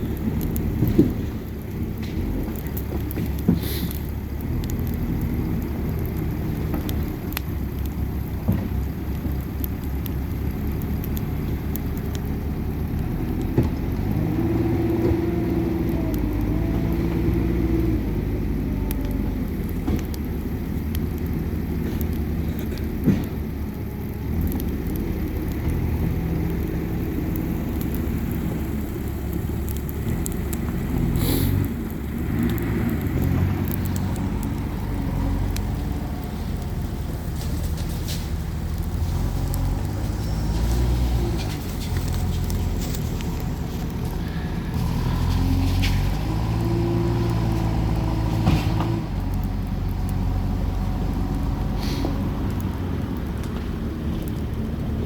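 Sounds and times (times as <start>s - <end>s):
bonfire crackling and popping: 0.0s - 55.0s
low pitched drone: 22.2s - 53.4s.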